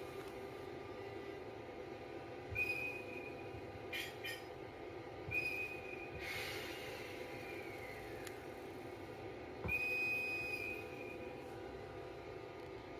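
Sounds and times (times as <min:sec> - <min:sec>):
hiss: 0:06.2 - 0:08.2.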